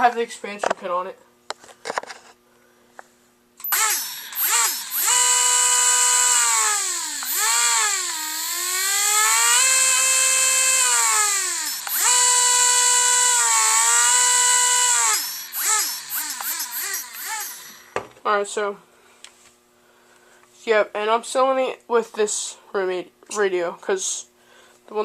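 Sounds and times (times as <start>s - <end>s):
rc car electric motor whine: 3.6s - 18.0s.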